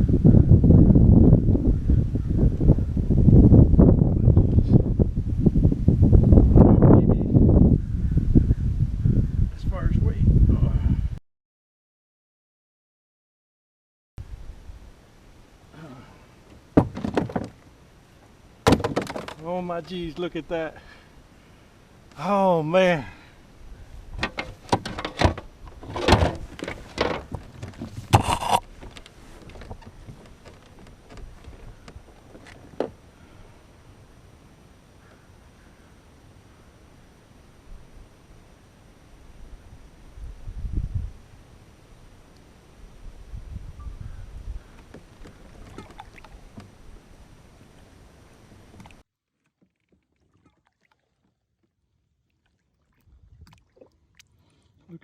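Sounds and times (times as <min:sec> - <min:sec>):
thumps against kayak hull: 0:16.8 - 0:17.6, 0:18.7 - 0:19.4
water splashing around kayak: 0:44.8 - 0:54.8.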